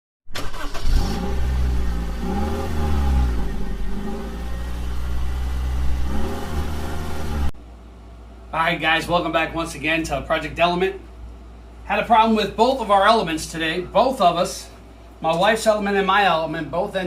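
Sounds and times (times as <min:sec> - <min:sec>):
car engine revving: 0:00.4 - 0:07.5.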